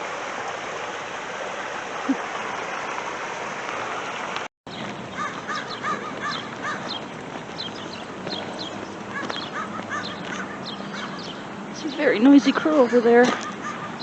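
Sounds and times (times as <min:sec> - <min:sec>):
rushing stream water: 0:00.0 - 0:14.0
crow cawing: 0:05.2 - 0:06.9, 0:09.1 - 0:11.2, 0:13.4 - 0:14.0.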